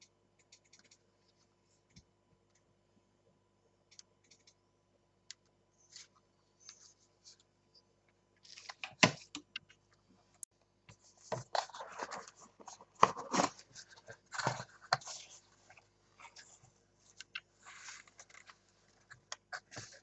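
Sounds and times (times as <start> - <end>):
packaging rustling: 11.3 - 15.4.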